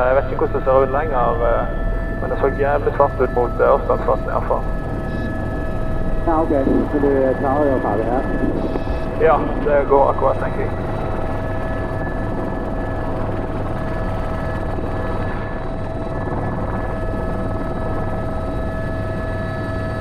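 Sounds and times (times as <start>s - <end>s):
helicopter rotor and turbine drone: 0.0s - 20.0s
high turbine whine: 0.0s - 20.0s.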